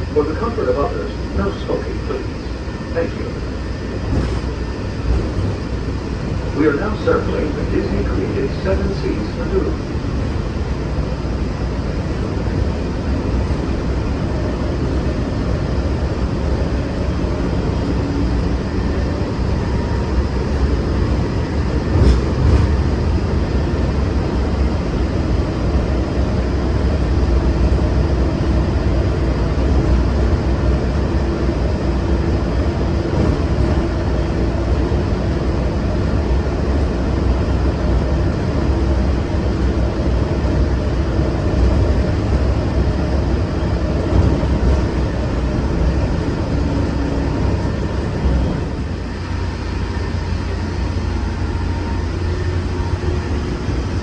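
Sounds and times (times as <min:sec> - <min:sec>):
monorail rumbling: 0:00.0 - 0:54.0
monorail car bump: 0:04.0 - 0:06.0, 0:20.5 - 0:23.0, 0:33.0 - 0:34.4, 0:41.4 - 0:46.9.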